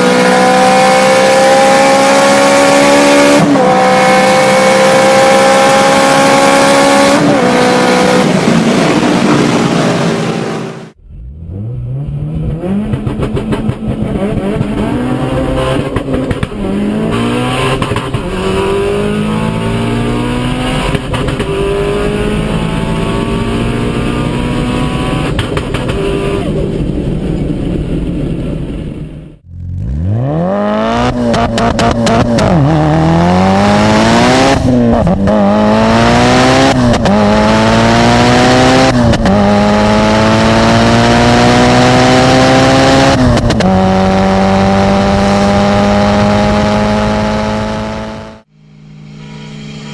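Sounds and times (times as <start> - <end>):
engine accelerating through gears: 0.0 - 26.6, 29.4 - 49.9
car engine revving: 0.0 - 49.9.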